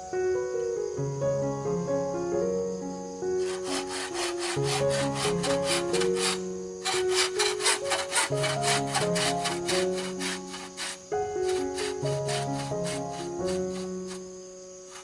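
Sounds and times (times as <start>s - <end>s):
background music: 0.2s - 15.0s
hand saw cutting wood: 3.4s - 14.3s.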